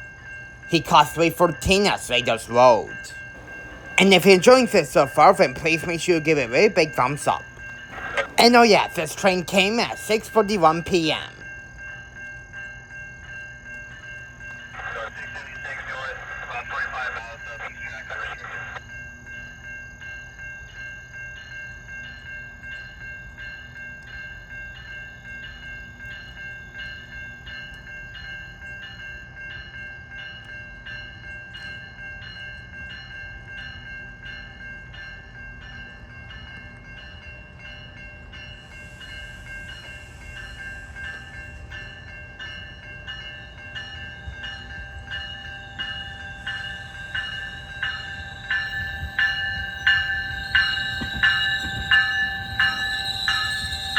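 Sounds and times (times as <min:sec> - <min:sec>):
train rumbling past: 0:00.0 - 0:12.2, 0:28.2 - 0:53.9
crossing bell ringing: 0:00.0 - 0:53.9
train wheel clicks: 0:03.3 - 0:11.5.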